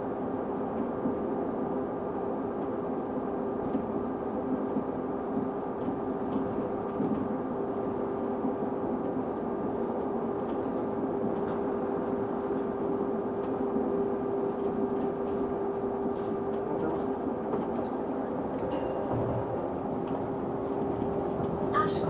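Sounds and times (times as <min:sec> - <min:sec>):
bus running noise: 0:10.4 - 0:22.0.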